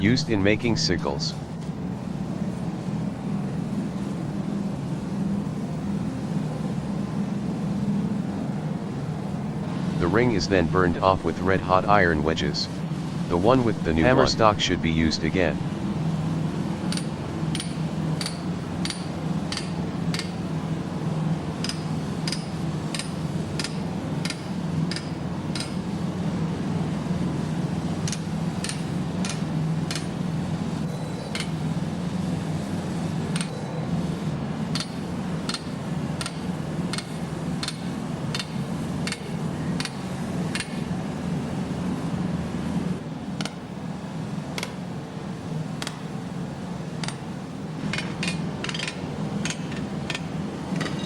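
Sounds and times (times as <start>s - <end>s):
low hum: 0.0s - 18.1s.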